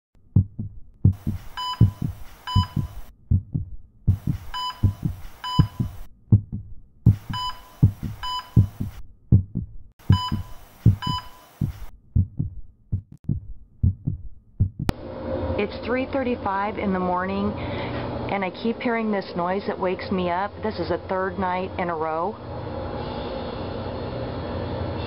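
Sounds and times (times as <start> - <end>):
deep rhythmic thumping: 0.2 - 15.0
short high beeps: 1.6 - 3.0, 4.5 - 6.0, 7.3 - 8.8, 10.1 - 11.6.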